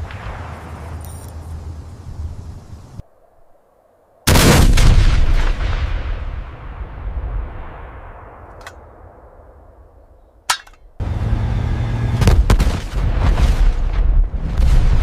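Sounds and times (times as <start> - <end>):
explosions booming: 0.0 - 1.0, 4.3 - 9.1, 12.2 - 15.0.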